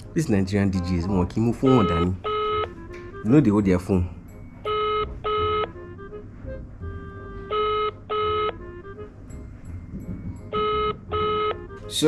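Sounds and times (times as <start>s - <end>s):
telephone ringback tone: 1.6s - 2.9s, 4.6s - 6.2s, 6.8s - 9.1s, 10.2s - 12.0s.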